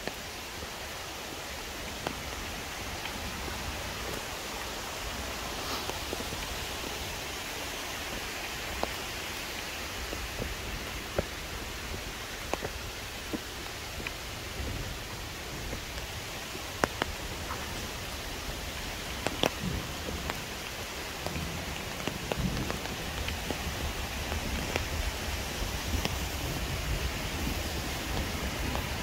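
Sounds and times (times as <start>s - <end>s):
waterfall rushing: 0.0s - 29.0s.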